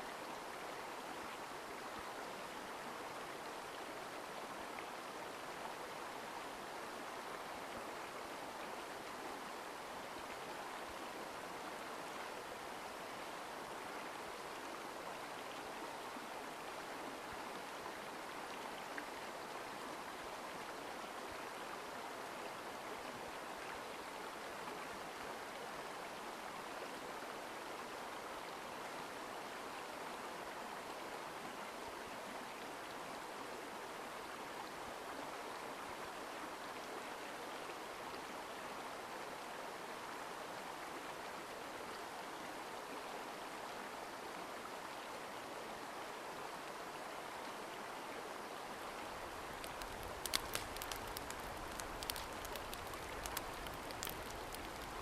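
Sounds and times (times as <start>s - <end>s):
stream water rushing over rocks: 0.0s - 55.0s.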